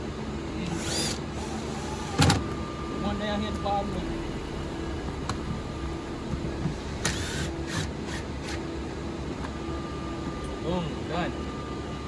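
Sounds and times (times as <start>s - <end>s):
shop machines humming: 0.0s - 12.0s
power screwdriver rasping bursts: 0.7s - 2.4s.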